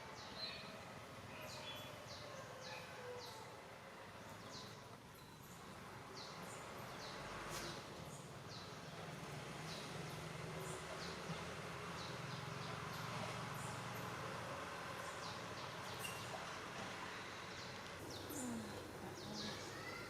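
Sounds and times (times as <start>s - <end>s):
small bird chirping: 15.1s - 16.5s.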